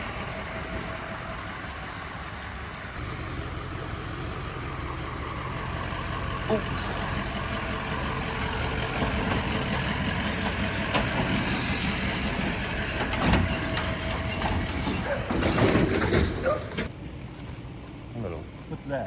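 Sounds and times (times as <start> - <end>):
vehicle engine and road rumble: 0.0 - 19.0
sharp knocks and rattles: 7.3 - 16.9.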